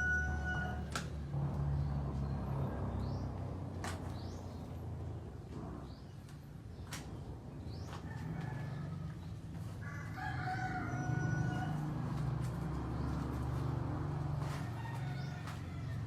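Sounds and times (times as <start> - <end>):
rooster crowing: 0.0 - 0.9, 8.0 - 12.3, 14.4 - 16.0.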